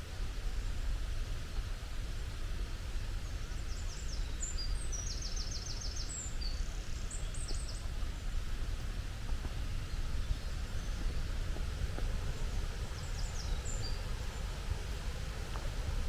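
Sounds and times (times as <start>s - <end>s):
low rumble and hiss: 0.0s - 16.0s
songbird singing: 3.2s - 16.0s.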